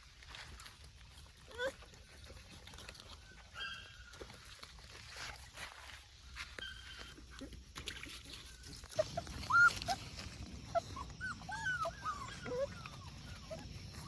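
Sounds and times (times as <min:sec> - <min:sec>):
puppies whimpering and yipping: 0:01.4 - 0:04.5, 0:06.5 - 0:07.6, 0:08.3 - 0:14.0.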